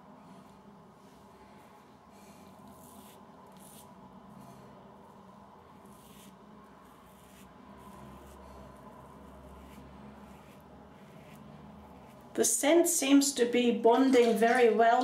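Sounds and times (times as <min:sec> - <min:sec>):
razor scraping skin: 0:02.6 - 0:04.0, 0:05.8 - 0:12.3.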